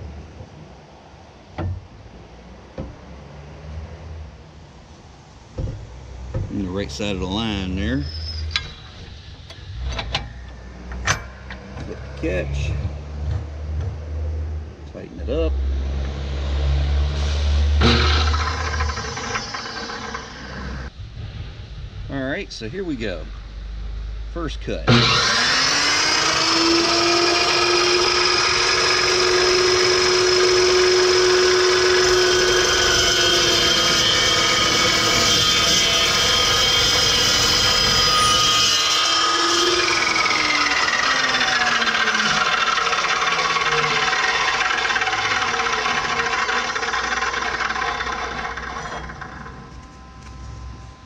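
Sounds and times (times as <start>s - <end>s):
chop saw cutting steel: 15.9s - 20.9s, 24.9s - 49.8s.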